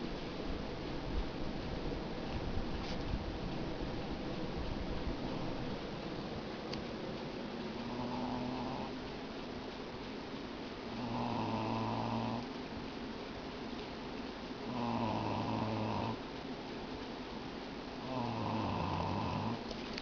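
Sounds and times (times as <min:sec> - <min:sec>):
pet snoring: 0:07.8 - 0:09.0, 0:10.9 - 0:12.5, 0:14.6 - 0:16.2, 0:18.0 - 0:19.7.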